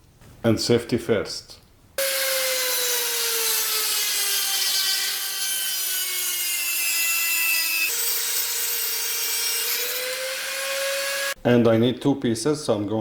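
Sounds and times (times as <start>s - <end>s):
rotary tool cutting metal: 2.0s - 11.4s.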